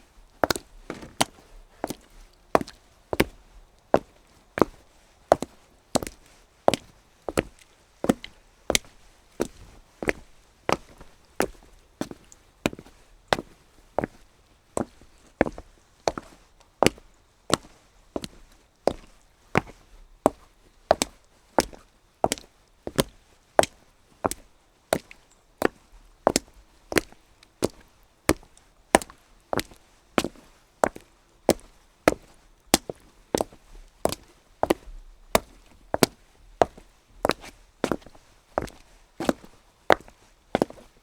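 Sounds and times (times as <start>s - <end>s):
footsteps on wet cobblestones: 0.4s - 14.2s, 14.8s - 40.9s.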